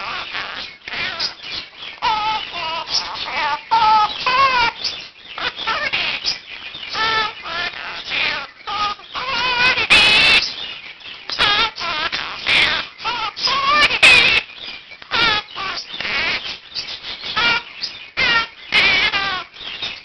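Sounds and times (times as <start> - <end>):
parakeet harsh squawk: 0.0 - 1.4, 2.0 - 4.8, 5.4 - 6.2, 6.9 - 10.5, 11.4 - 14.4, 15.1 - 16.5, 17.4 - 19.5
parakeet chattering and whistling: 0.0 - 10.5, 11.3 - 14.5, 15.1 - 19.4.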